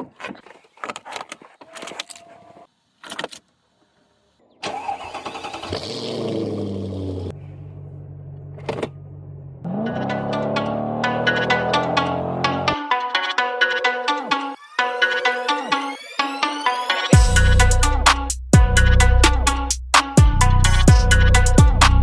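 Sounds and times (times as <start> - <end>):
car engine starting and idling: 4.6 - 12.8
music: 9.7 - 22.0.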